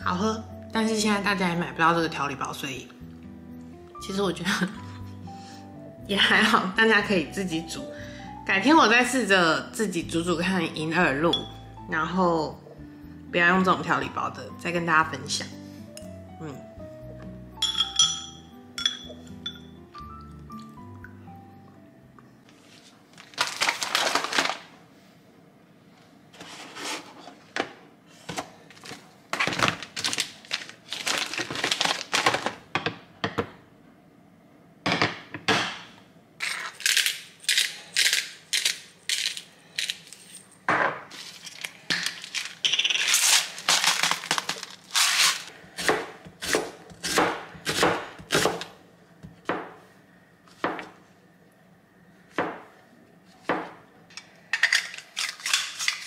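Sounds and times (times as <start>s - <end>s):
dishes and utensils clattering: 17.6s - 19.8s.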